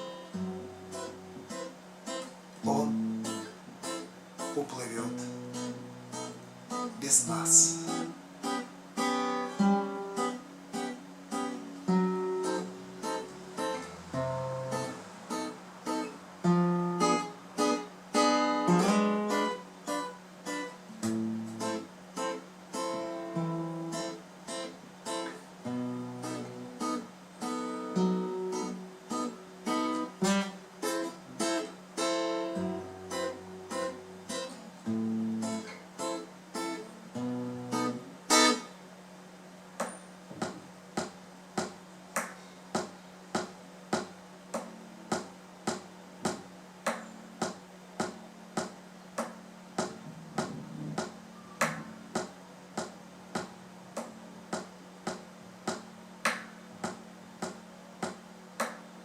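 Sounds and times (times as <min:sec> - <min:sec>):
acoustic guitar playing: 0:00.0 - 0:38.9, 0:39.7 - 0:59.0
ticking knock beat: 0:49.8 - 0:55.9.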